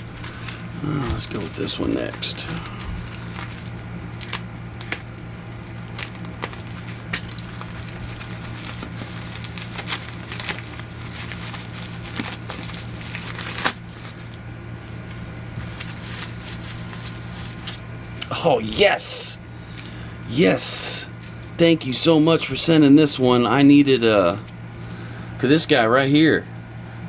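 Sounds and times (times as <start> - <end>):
packaging crinkling: 0.0 - 17.8
steady low hum: 0.0 - 27.0.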